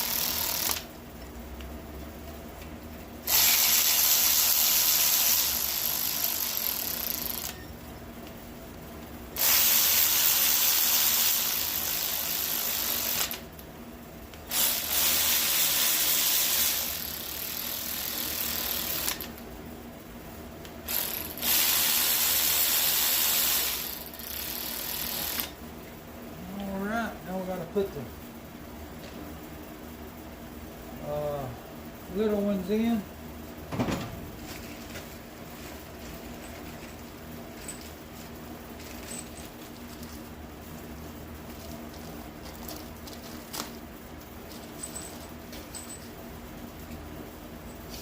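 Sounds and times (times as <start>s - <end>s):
cordless power tool running: 3.3s - 7.5s.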